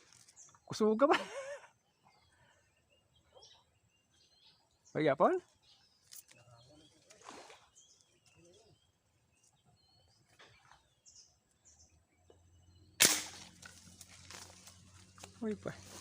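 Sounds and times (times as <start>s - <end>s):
faint bird chirps: 0.0s - 13.0s
air gun shot: 13.0s - 13.6s.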